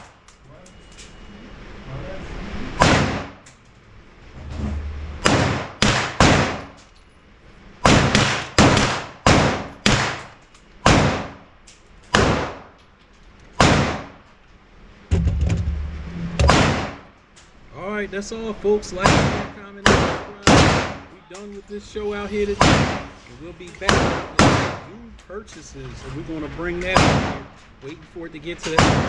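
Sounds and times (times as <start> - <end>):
gunshots with echo: 2.8 - 3.4, 5.2 - 6.8, 7.8 - 11.4, 13.6 - 14.2, 15.1 - 17.1, 19.0 - 21.1, 23.9 - 24.9, 28.7 - 29.0.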